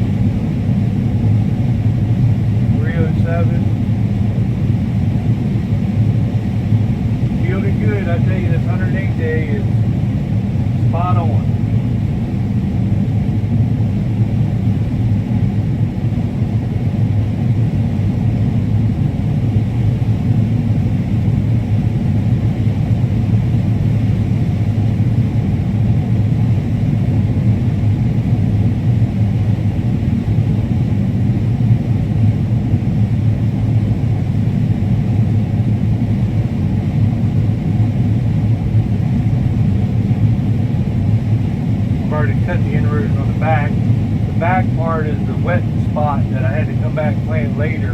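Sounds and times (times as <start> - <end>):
combine harvester running: 41.5 - 47.9.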